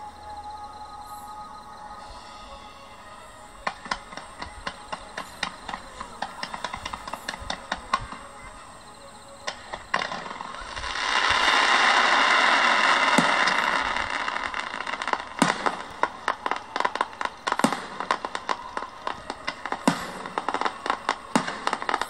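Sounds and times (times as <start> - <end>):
fireworks crackling shower: 0.0 - 22.0
fireworks bangs: 3.4 - 22.0
fireworks pops and cracks: 3.6 - 8.6, 9.4 - 22.0.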